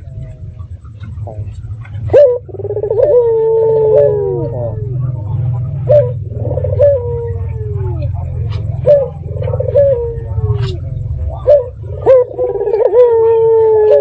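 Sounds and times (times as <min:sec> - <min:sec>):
dove cooing: 0:00.0 - 0:14.0
faint pulsing high trill: 0:00.0 - 0:14.0
steady low hum: 0:00.0 - 0:14.0.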